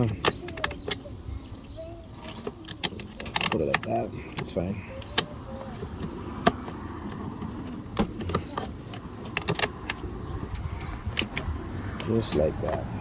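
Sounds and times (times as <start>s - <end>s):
low steady background rumble: 0.0s - 13.0s
metal hardware clinking: 2.2s - 5.3s.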